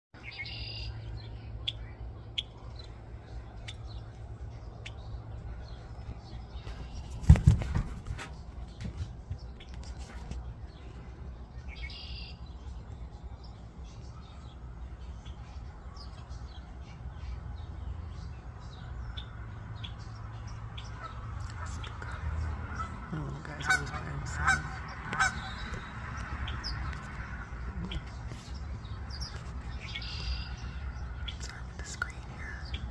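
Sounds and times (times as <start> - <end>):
honk-like sounds: 22.7 - 25.8.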